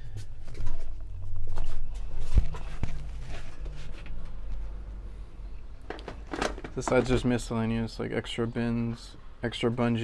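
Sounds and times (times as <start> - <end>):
parts bins rustling: 5.8 - 7.6.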